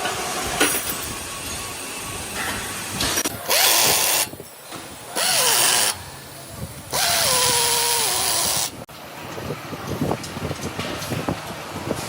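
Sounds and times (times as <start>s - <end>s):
power tool whirring: 3.2s - 4.4s, 5.2s - 6.0s, 6.9s - 8.8s.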